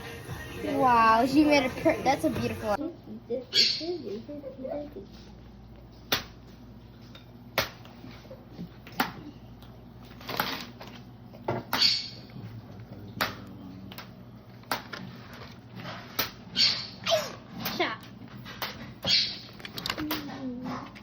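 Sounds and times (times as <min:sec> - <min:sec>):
rustling or scraping: 0:14.9 - 0:16.2.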